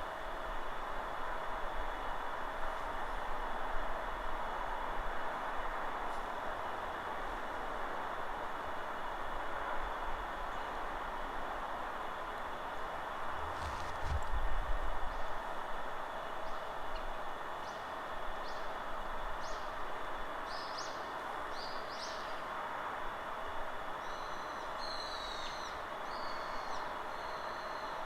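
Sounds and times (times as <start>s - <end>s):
steady wind: 0.0s - 28.0s
wind buffeting microphone: 13.3s - 15.3s.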